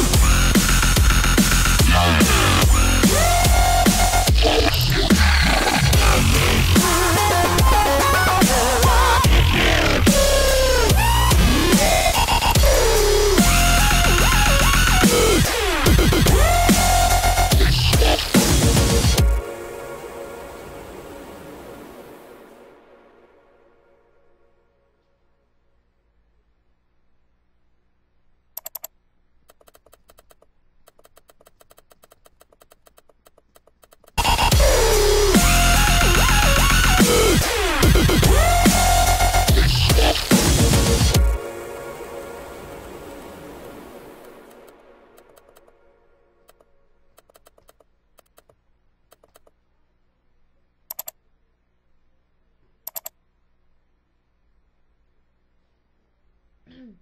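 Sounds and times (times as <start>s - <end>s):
mouse clicks: 28.6s - 34.2s, 46.5s - 49.6s, 50.9s - 51.2s, 52.8s - 53.2s.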